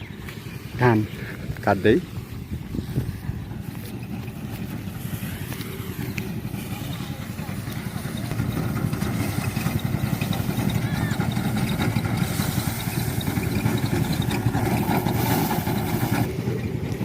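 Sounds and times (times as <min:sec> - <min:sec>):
small engine chugging: 0:00.0 - 0:17.0
machinery hiss: 0:12.0 - 0:16.3.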